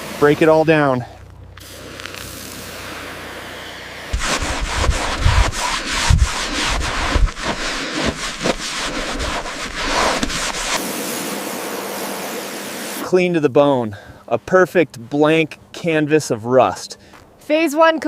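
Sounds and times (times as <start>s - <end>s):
steady hiss: 0.0s - 14.8s
hand scraping car body: 4.1s - 10.8s
low thumps: 4.1s - 10.8s.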